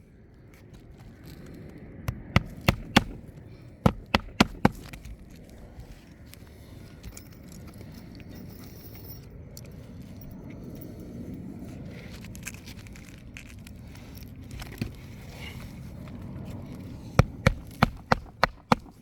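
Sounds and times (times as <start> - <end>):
scrapes and clicks on shingles: 0.5 - 5.9, 16.6 - 19.0.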